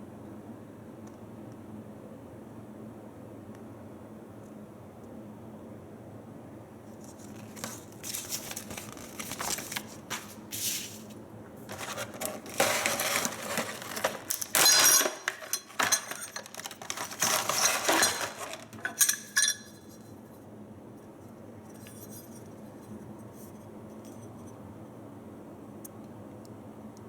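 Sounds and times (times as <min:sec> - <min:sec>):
packaging rustling: 0:07.0 - 0:19.1
metal parts clinking: 0:11.7 - 0:19.8.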